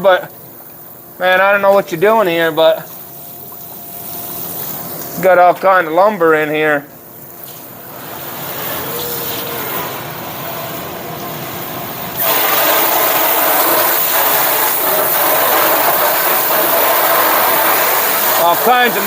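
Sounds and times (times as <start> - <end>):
water spraying from a hose: 2.6 - 5.2, 7.2 - 19.0.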